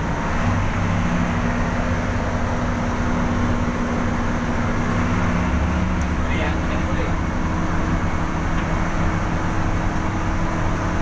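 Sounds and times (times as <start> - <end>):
vehicle engine running: 0.0 - 11.0.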